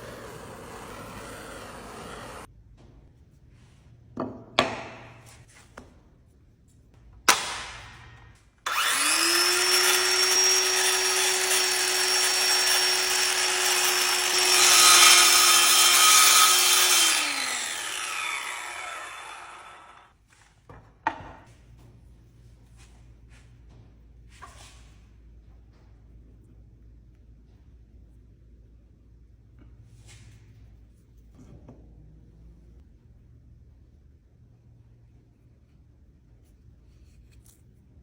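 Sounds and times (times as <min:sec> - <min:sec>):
electric saw cutting: 0:00.0 - 0:02.5, 0:08.7 - 0:20.1.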